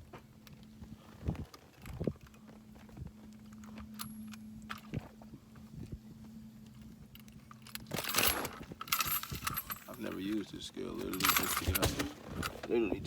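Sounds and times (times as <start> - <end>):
steady low hum: 0.0 - 13.0
knocks and clicks of handling: 11.0 - 12.7.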